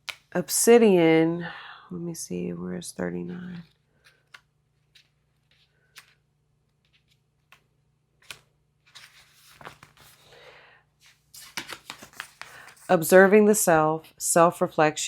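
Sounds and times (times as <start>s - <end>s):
cards rustling and flicking: 0.0s - 0.3s, 3.6s - 13.1s
cards clicking and tapping: 4.0s - 8.5s, 11.4s - 12.7s.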